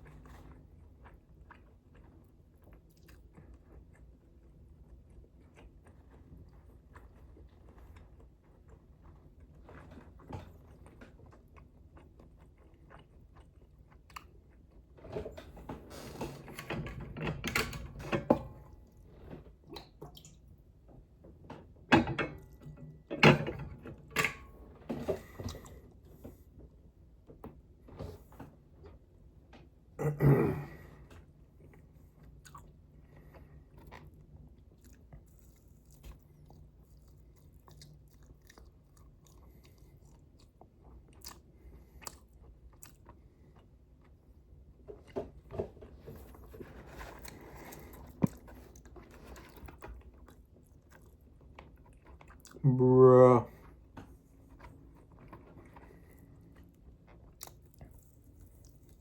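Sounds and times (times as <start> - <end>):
chewing and biting chicken wings: 0.1 - 14.9, 31.8 - 44.6, 46.2 - 52.8, 54.5 - 59.0
low throat sound: 30.0 - 30.9.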